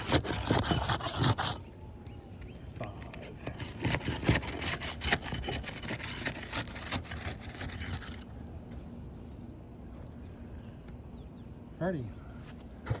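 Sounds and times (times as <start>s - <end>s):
crowbar scraping and cracking shingle: 0.0s - 1.7s, 2.7s - 8.4s.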